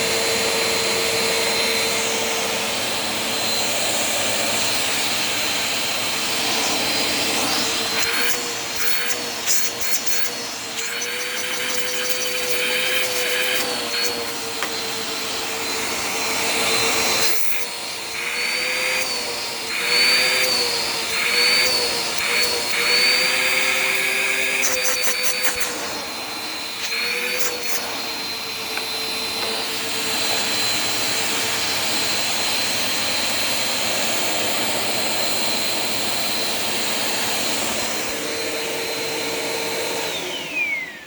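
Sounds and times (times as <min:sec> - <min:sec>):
vacuum cleaner motor whine: 0:00.0 - 0:41.0
rushes of airflow: 0:04.2 - 0:08.8.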